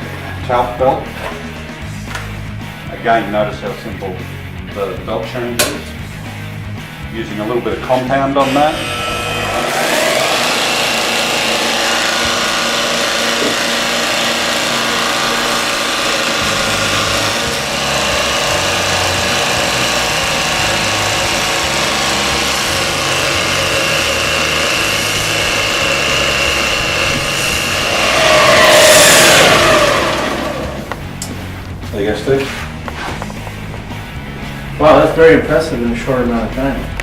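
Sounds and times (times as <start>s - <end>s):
belt grinder motor whine: 8.3s - 31.3s
metal grinding against belt: 8.4s - 31.4s.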